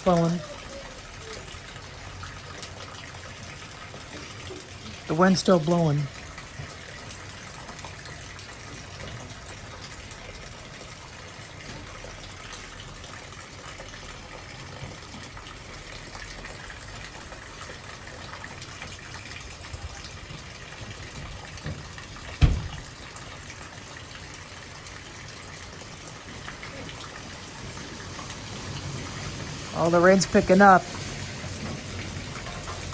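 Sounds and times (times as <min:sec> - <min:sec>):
steady rain: 0:00.0 - 0:32.9
water gushing from gutter: 0:00.0 - 0:32.9
sharp low thump: 0:22.4 - 0:22.8.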